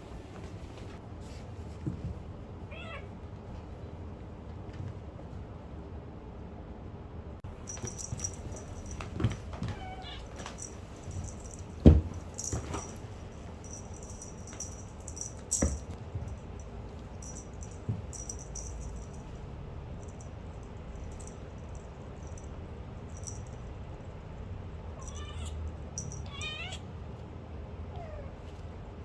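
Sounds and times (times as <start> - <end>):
light knocks and thumps: 7.6 - 19.3
kitten meowing: 9.6 - 10.4, 25.0 - 25.6, 26.2 - 26.8
high-pitched rattle: 10.0 - 16.0, 17.2 - 19.3.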